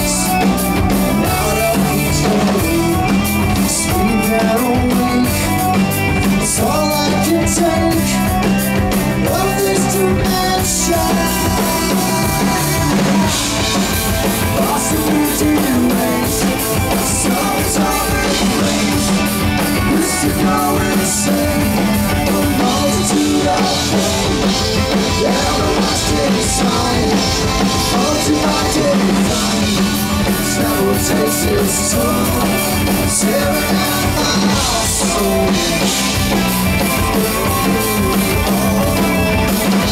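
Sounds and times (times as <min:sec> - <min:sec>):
bass: 0:00.0 - 0:39.9
drum kit: 0:00.0 - 0:39.9
electric guitar: 0:00.0 - 0:39.9
keyboards: 0:00.0 - 0:39.9.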